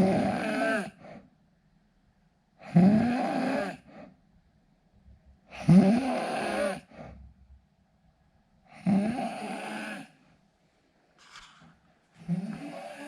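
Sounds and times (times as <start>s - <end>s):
man snoring: 0.0s - 1.0s, 2.6s - 3.9s, 5.6s - 6.9s, 8.8s - 10.2s, 12.2s - 13.0s.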